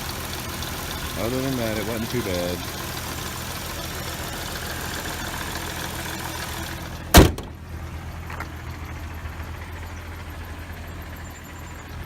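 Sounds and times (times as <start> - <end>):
car engine idling: 0.0 - 12.0
loud thump: 7.1 - 7.6.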